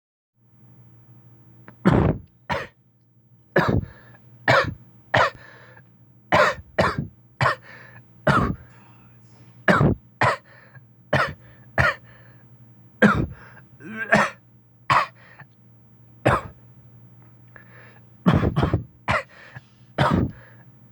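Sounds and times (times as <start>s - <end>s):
faint low hum: 0.4s - 20.9s
harsh coughs: 1.7s - 2.7s, 3.6s - 5.6s, 6.3s - 8.7s, 9.7s - 12.2s, 13.0s - 15.4s, 16.3s - 16.6s, 18.3s - 20.5s.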